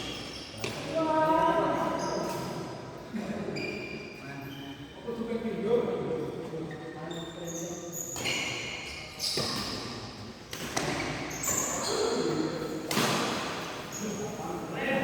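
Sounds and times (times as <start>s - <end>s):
shoes squeaking on floor: 0.0s - 0.9s, 1.9s - 2.6s, 3.5s - 5.0s, 6.6s - 10.0s, 10.7s - 12.6s, 13.8s - 14.4s
racket hitting shuttlecock: 12.8s - 13.7s.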